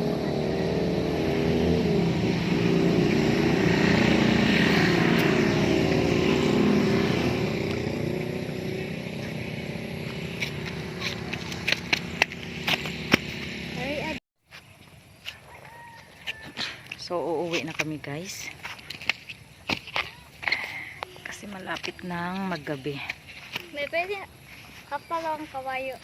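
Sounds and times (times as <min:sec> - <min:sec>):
motor engine running: 0:00.0 - 0:14.2.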